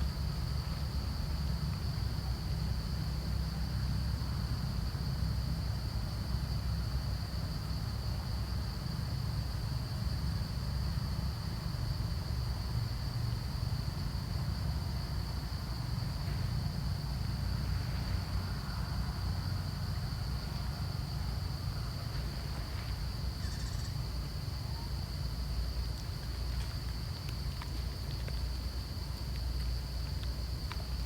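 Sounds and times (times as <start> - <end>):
high-pitched insect drone: 23.4 - 24.0.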